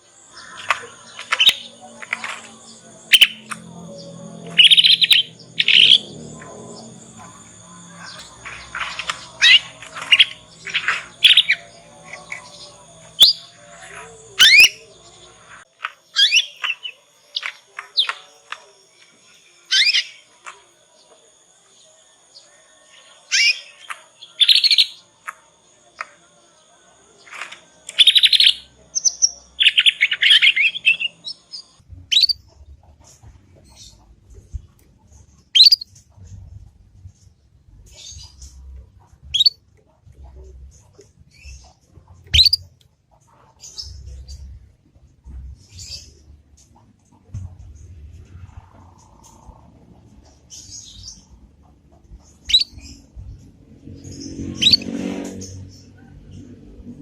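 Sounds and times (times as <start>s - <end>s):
whistled bird notes: 0.3s - 15.3s, 16.1s - 18.4s, 27.8s - 32.5s, 35.5s - 35.9s, 39.3s - 39.6s, 42.3s - 42.7s
canary chirping: 0.3s - 18.4s, 19.6s - 20.3s, 23.2s - 25.0s, 27.9s - 34.6s, 35.3s - 36.1s, 37.9s - 44.7s, 47.7s - 56.6s
buzzy bird trills: 0.3s - 18.5s, 35.6s - 35.9s, 39.3s - 39.6s, 42.3s - 42.7s.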